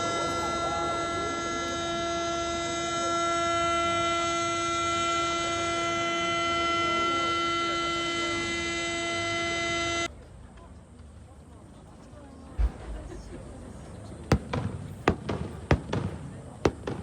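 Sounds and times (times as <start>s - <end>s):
faint crowd voices: 0.0s - 17.0s.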